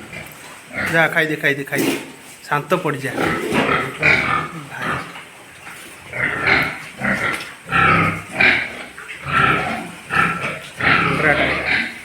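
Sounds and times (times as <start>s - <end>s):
pigs squealing and grunting: 0.0s - 2.4s, 3.0s - 12.0s.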